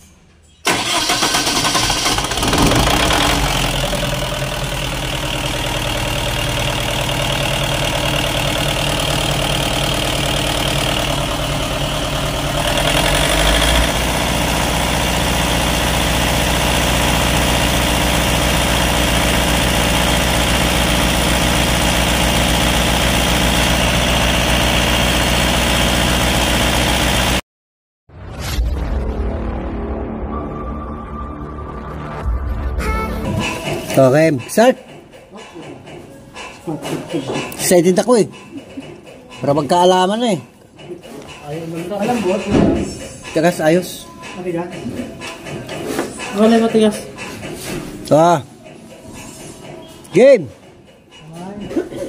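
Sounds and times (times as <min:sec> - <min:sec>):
generator engine running: 0:00.7 - 0:27.4.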